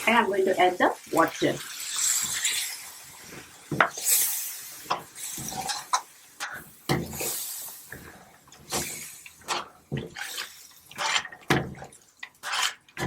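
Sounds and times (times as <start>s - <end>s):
hiss: 4.0s - 5.7s, 7.1s - 8.0s
spoon scraping a cooking pot: 5.2s - 7.3s, 9.4s - 11.3s, 12.3s - 13.0s.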